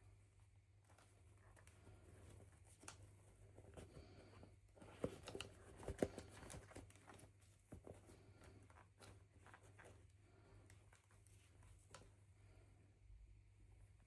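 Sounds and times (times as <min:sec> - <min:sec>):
light clicks and taps: 0:00.8 - 0:03.8.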